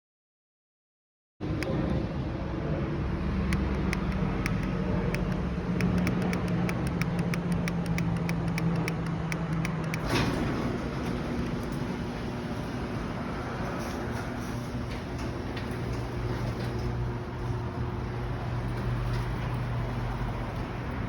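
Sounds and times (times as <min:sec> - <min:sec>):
garage door motor hum: 0:03.2 - 0:21.0
repeated clicking: 0:03.5 - 0:10.1.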